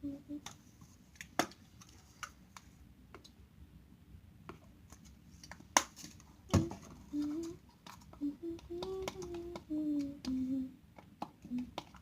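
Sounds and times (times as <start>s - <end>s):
small objects clicking and tapping: 11.0s - 12.0s.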